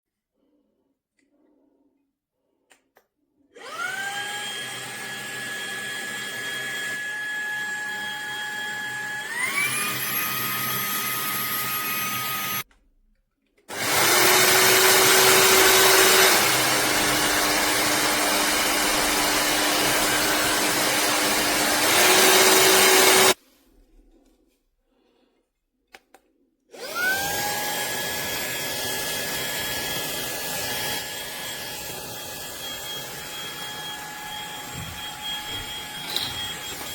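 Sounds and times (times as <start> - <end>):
handheld vacuum whining: 3.6 - 12.7, 13.7 - 23.4, 26.7 - 36.9.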